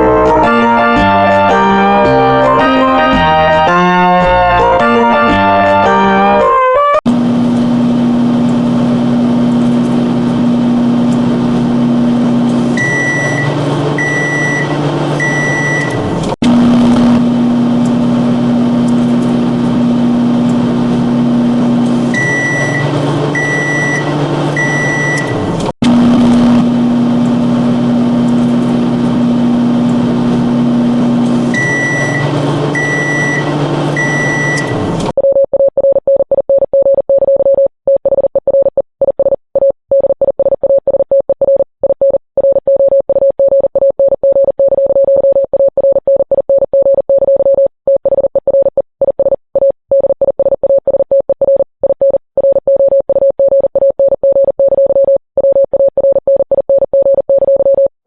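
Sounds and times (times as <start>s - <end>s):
pulsing mid-pitched tone: 0.0s - 6.4s
synthesized alarm tones: 0.0s - 7.0s
short high beeps: 31.6s - 35.4s.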